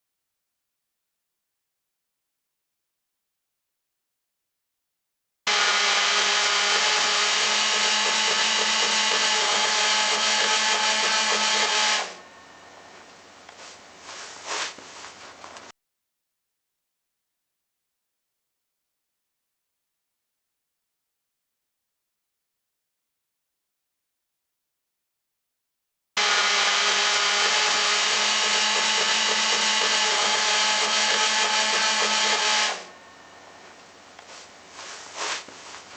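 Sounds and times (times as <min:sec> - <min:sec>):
chainsaw engine running: 0:05.5 - 0:12.2, 0:26.2 - 0:32.9.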